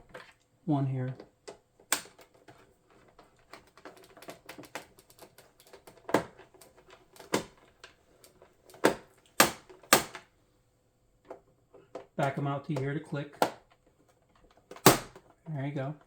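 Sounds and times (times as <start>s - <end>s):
louder sharp clicks: 14.8s - 15.2s.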